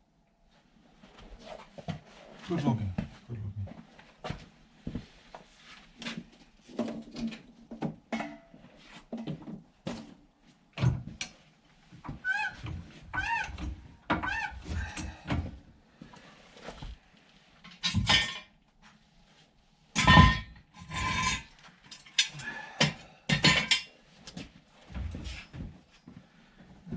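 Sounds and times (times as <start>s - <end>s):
tools and hardware clunking: 6.8s - 8.6s, 20.0s - 23.9s.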